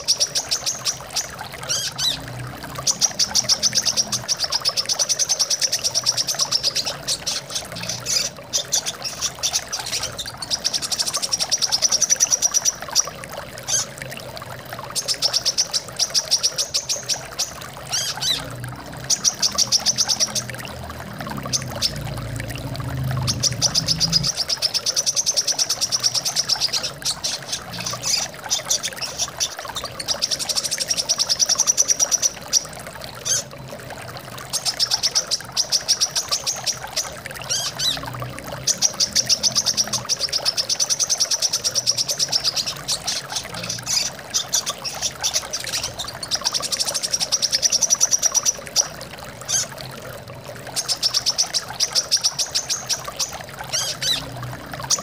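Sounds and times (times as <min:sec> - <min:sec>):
running water: 0:00.0 - 0:55.0
bird chirping trills: 0:14.9 - 0:33.5.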